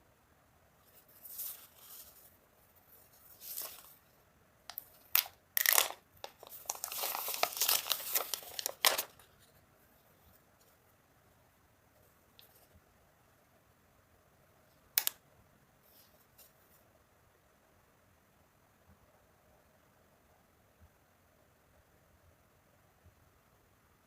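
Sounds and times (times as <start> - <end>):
packaging crackling: 4.7 - 9.2
packaging ripping: 5.1 - 9.2.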